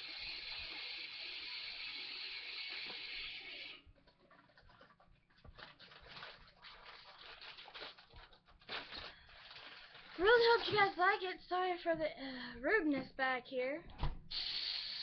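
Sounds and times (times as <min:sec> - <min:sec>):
steady hiss: 0:00.0 - 0:03.8, 0:14.3 - 0:15.0.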